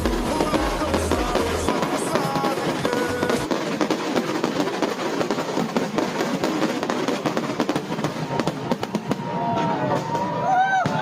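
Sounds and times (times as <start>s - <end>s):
music playing: 0.0s - 3.6s
fireworks crackling and popping: 0.0s - 11.0s.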